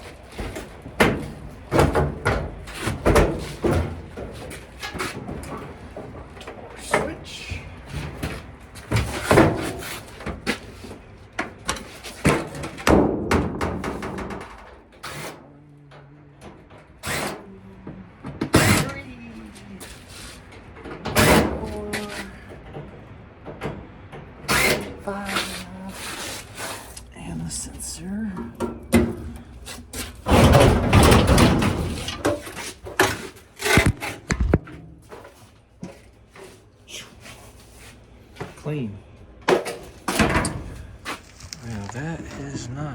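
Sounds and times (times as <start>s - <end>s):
sheet metal knocks and rattles: 0.3s - 7.1s, 11.4s - 15.0s, 28.4s - 34.8s.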